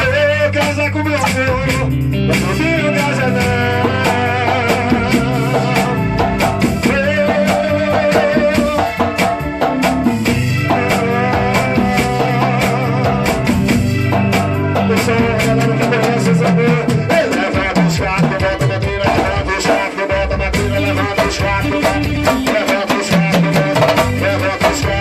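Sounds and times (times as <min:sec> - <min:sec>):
bass: 0:00.0 - 0:25.0
drum kit: 0:00.0 - 0:25.0
guitar: 0:00.0 - 0:25.0
wavering melody line: 0:02.1 - 0:18.8.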